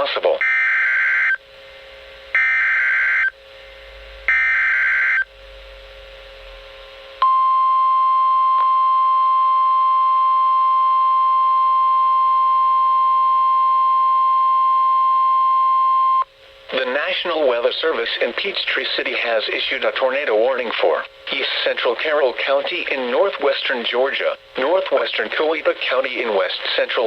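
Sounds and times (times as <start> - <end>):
steady warning alarm tone: 0.4 - 1.4, 2.3 - 3.4, 4.2 - 5.3.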